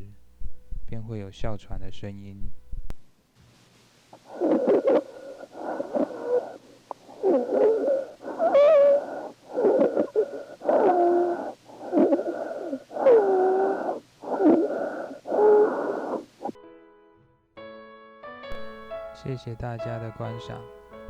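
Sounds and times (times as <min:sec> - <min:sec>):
harsh wheezing breath sounds: 0:04.2 - 0:16.4.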